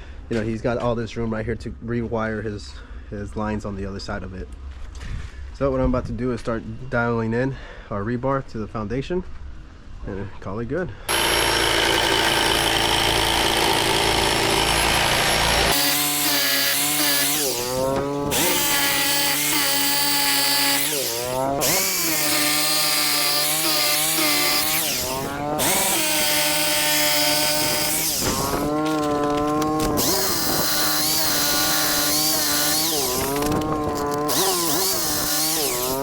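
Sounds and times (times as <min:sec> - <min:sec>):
electric power tool running: 0:11.1 - 0:36.0
harsh grinding: 0:11.1 - 0:36.0.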